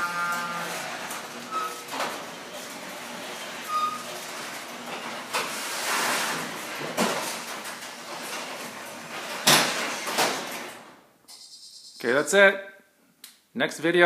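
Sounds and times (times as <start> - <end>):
garage door opener closing door: 0.0 - 11.0
garage door clunks: 0.3 - 11.0.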